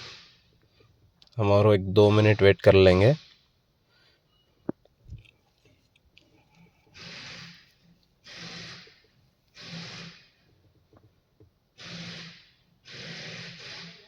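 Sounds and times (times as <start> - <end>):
person breathing: 3.8 - 4.5, 6.2 - 9.0.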